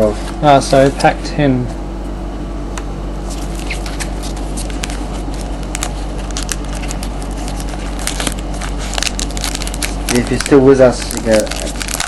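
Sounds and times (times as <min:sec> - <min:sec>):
wrapper crackling and crinkling: 0:03.3 - 0:12.0.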